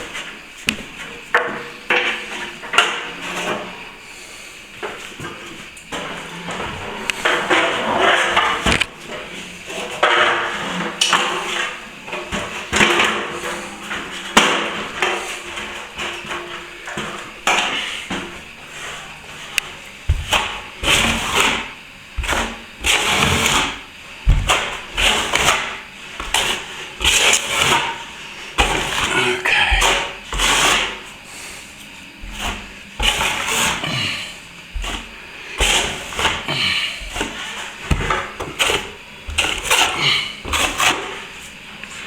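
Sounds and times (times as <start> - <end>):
plastering tool scraping plaster: 9.7 - 42.0.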